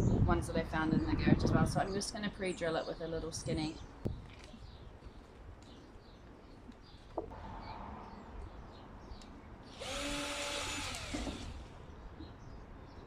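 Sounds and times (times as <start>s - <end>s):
power drill whining: 9.7s - 11.7s.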